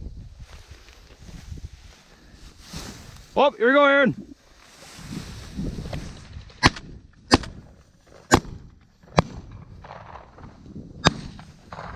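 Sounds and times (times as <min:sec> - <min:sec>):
shotgun shots: 0:08.3 - 0:10.4, 0:11.0 - 0:11.9.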